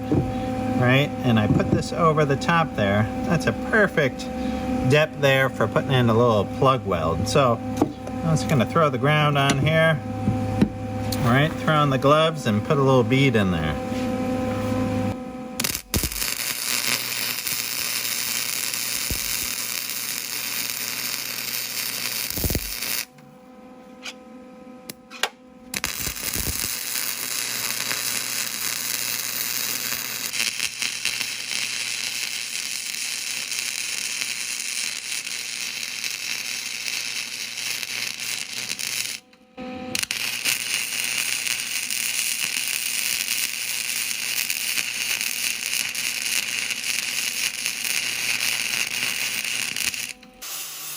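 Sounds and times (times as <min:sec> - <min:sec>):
welding arc crackling: 0:00.0 - 0:23.1, 0:24.9 - 0:50.9.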